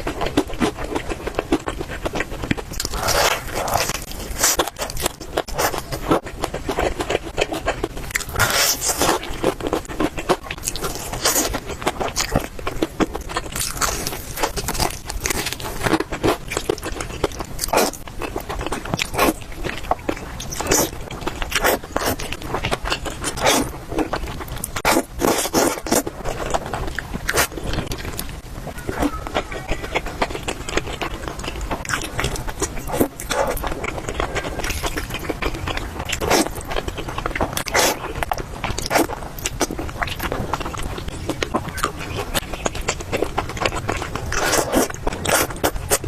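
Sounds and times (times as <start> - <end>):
person chewing food: 0.0 - 46.0.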